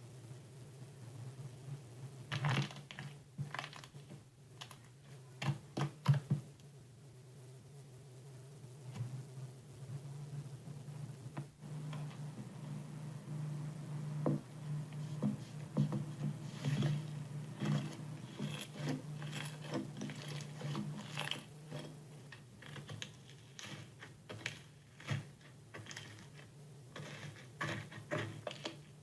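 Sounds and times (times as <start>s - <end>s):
steady low hum: 6.5s - 29.0s.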